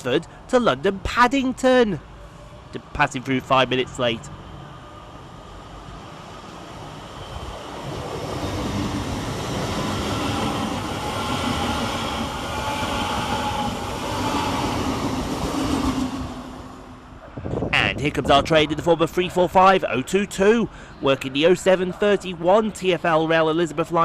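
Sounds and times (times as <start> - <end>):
train rumble with motor whine: 3.6 - 17.7.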